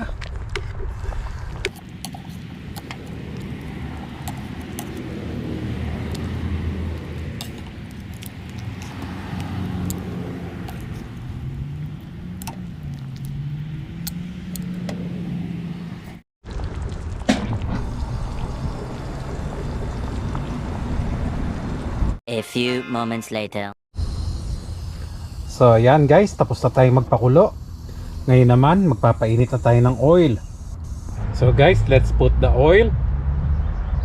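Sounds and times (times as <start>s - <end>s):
water boiling rumble: 0.0s - 13.2s, 16.4s - 22.1s.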